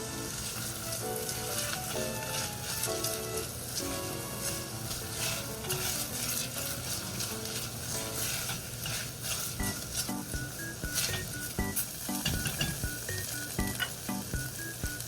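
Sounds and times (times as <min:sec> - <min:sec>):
food sizzling in a frying pan: 0:00.0 - 0:15.0
utensil scraping a pan: 0:00.3 - 0:10.2.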